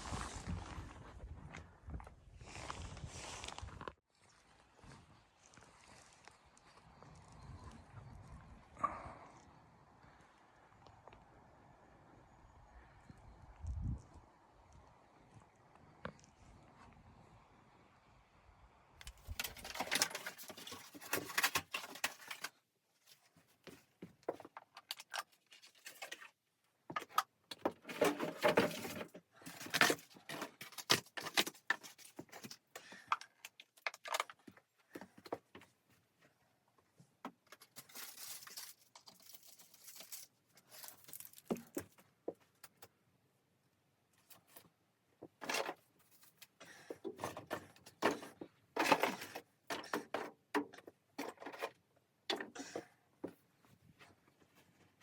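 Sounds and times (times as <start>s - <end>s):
objects rustling: 19.0s - 36.3s, 37.3s - 42.4s, 44.2s - 55.0s.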